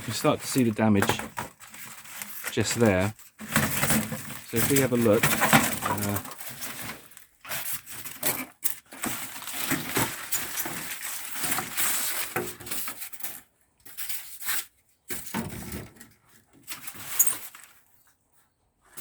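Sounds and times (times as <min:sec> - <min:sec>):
packaging rustling and crackling: 0:00.0 - 0:14.7.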